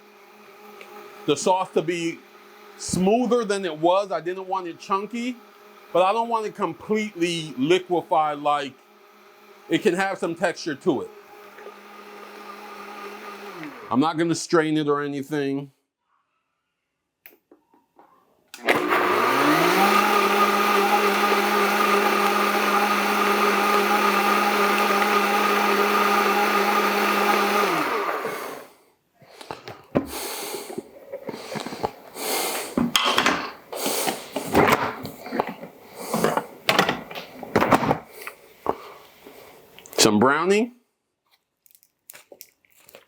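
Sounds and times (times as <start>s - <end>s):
blender motor running: 0.0s - 14.0s, 18.6s - 28.8s, 30.0s - 36.9s
kitchen clatters and knocks: 32.8s - 33.7s, 34.4s - 38.1s.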